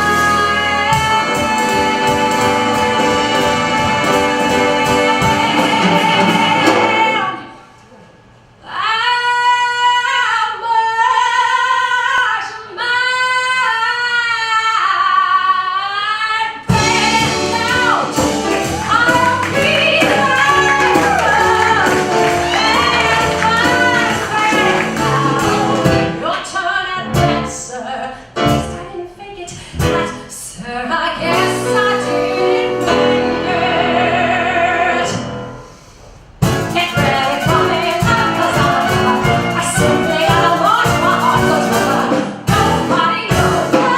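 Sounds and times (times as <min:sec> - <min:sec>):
full band playing: 0:00.0 - 0:07.6, 0:16.7 - 0:27.8, 0:28.4 - 0:28.9, 0:31.2 - 0:43.9
woman singing with vibrato: 0:00.0 - 0:07.8, 0:08.6 - 0:35.3, 0:36.6 - 0:43.9.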